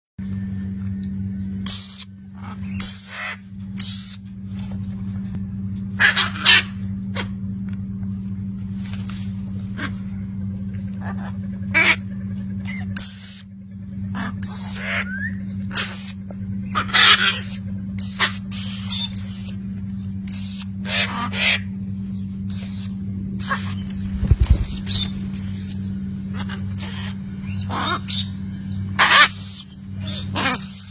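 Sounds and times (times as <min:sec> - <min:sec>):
steady low hum: 0:00.2 - 0:30.9
parrots squawking: 0:01.7 - 0:04.2, 0:06.0 - 0:07.3, 0:11.0 - 0:13.5, 0:14.1 - 0:19.6, 0:20.3 - 0:21.7, 0:22.5 - 0:28.4, 0:29.0 - 0:30.9.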